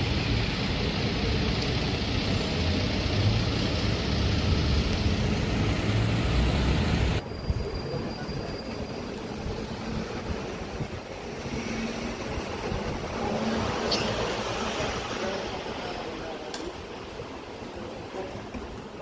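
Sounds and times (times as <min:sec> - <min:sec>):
vehicle rumble with low drone: 0:00.0 - 0:07.6
street noise: 0:00.0 - 0:19.0.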